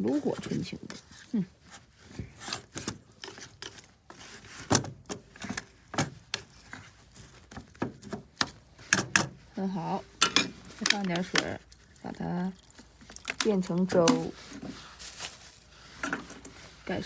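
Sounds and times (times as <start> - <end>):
utensil scraping in a pot: 0.0 - 4.7, 5.3 - 17.0.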